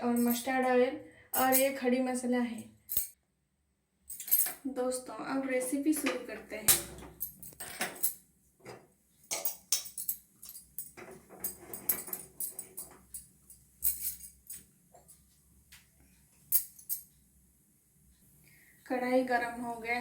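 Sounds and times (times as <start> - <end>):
metal kitchen utensils clinking: 0.0 - 0.6, 1.4 - 1.8, 5.6 - 15.2.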